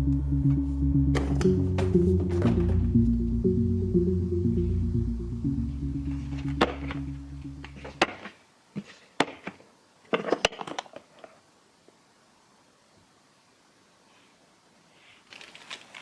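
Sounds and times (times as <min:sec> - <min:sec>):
background music: 0:00.0 - 0:08.1.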